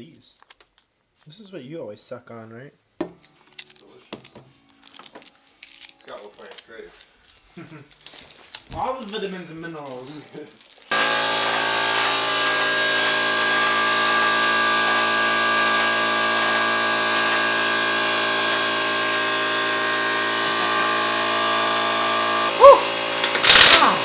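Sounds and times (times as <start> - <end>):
machine humming and whining: 10.9 - 24.0.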